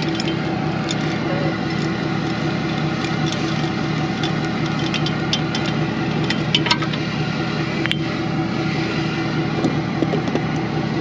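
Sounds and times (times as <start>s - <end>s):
truck engine running: 0.0s - 11.0s.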